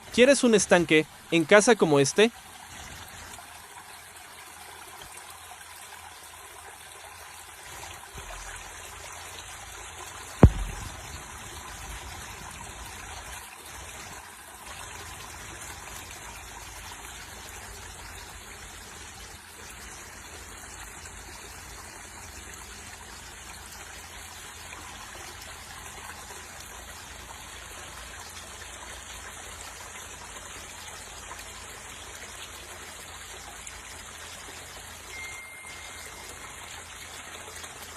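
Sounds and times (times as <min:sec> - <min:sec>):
water trickling into pond: 0:00.0 - 0:37.9
loud thump: 0:10.4 - 0:11.4.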